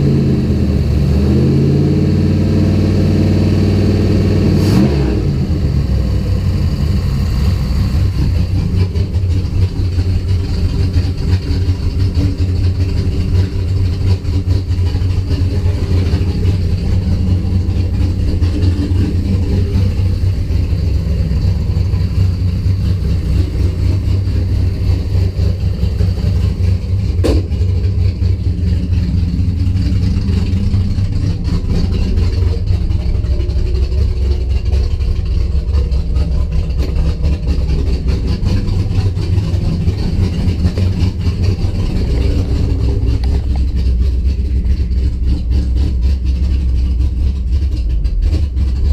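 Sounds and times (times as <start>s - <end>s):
car engine idling roughly: 0.0s - 48.9s
sharp engine pop: 27.2s - 27.7s.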